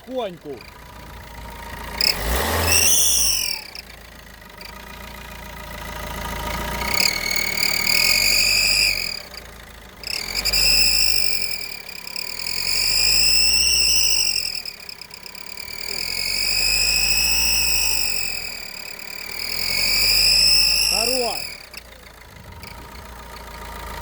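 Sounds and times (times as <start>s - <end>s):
diesel engine revving: 0.0s - 24.0s
high whistle from engine: 2.0s - 3.9s, 6.7s - 21.9s.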